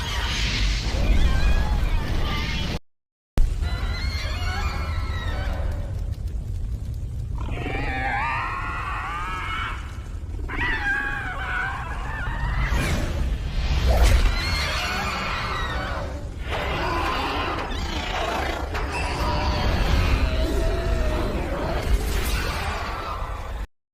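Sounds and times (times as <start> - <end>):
low rumble: 3.4 - 23.7
creature shrieks: 7.4 - 23.6.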